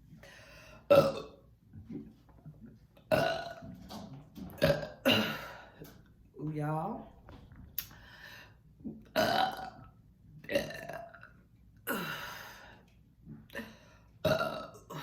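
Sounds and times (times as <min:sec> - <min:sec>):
woman burping: 0:00.9 - 0:01.4, 0:03.1 - 0:03.7, 0:04.6 - 0:06.0, 0:09.0 - 0:09.8, 0:10.4 - 0:12.6, 0:13.5 - 0:15.0.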